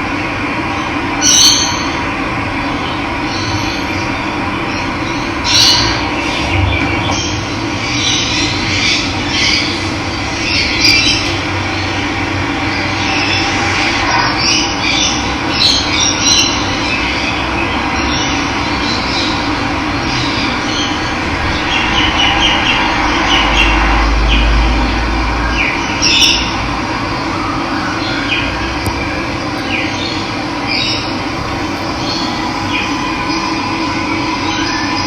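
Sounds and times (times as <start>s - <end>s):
birds chirping: 27.9s - 35.0s.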